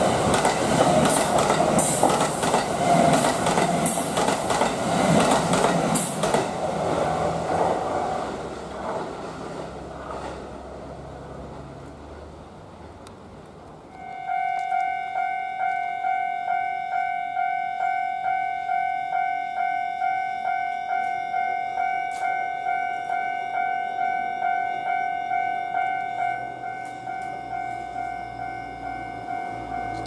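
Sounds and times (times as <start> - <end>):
railroad crossing alarm ringing: 0.0 - 6.6, 13.9 - 30.0
low rumble of approaching train: 0.0 - 30.0.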